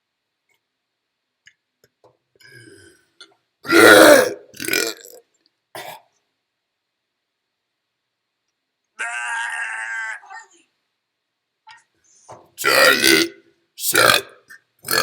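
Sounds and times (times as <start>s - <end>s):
person burping loudly: 3.6s - 5.2s, 5.8s - 6.0s, 12.6s - 15.0s.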